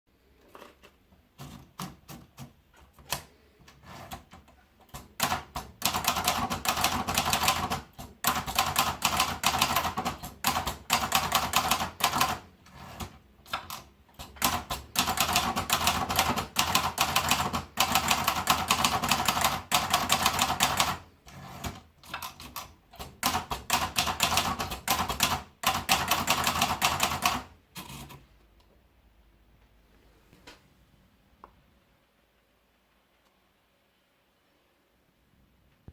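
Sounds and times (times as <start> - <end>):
typewriter keystrokes clattering: 1.4 - 28.2.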